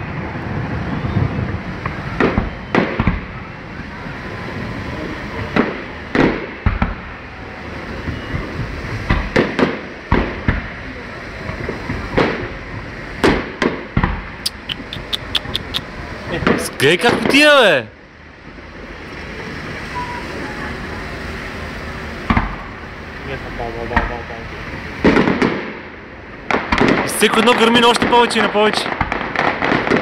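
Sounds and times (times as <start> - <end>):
fireworks crackling: 0.0 - 30.0
fireworks shells bursting: 13.2 - 17.5.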